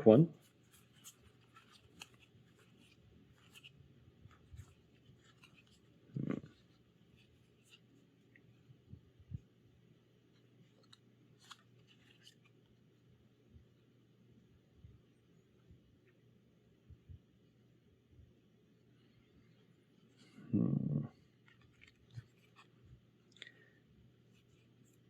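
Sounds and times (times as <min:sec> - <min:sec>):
trading cards rustling: 0:00.4 - 0:08.5, 0:10.4 - 0:12.7, 0:21.3 - 0:23.6.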